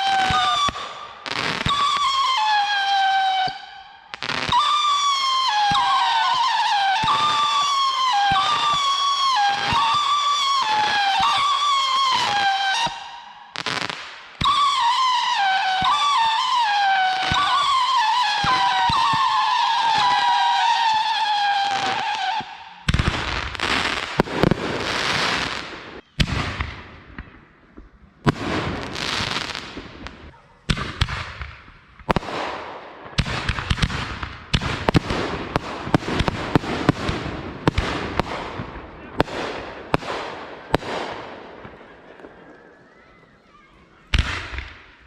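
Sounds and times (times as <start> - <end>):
firework whistling: 0.0 - 27.2
firework bangs and crackling: 0.0 - 45.0.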